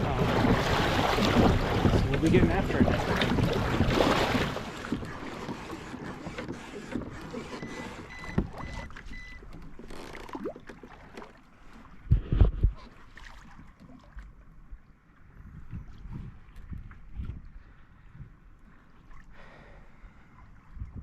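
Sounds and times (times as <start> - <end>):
heavy low thumps: 0.0 - 4.4.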